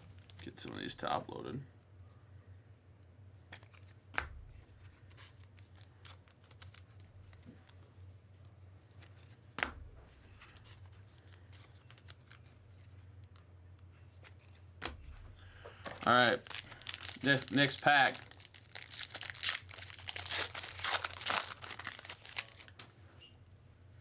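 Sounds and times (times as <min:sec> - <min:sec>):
cards scraping plastic: 0:15.8 - 0:23.0.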